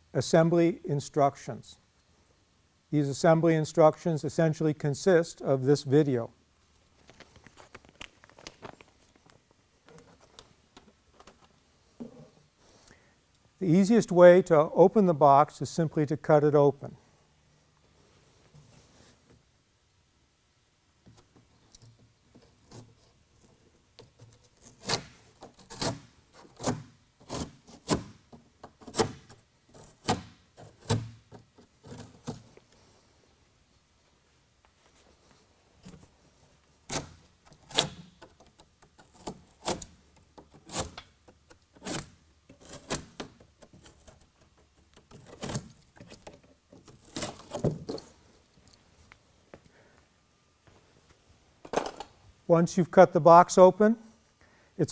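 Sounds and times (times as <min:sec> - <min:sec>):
knife cutting cardboard: 0:22.4 - 0:32.5, 0:36.9 - 0:48.1.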